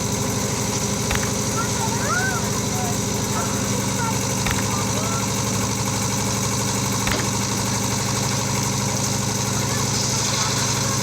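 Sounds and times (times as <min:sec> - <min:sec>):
concrete mixer engine chugging: 0:00.0 - 0:11.0
sharp knock: 0:01.1 - 0:01.5, 0:04.4 - 0:04.8, 0:07.1 - 0:07.5.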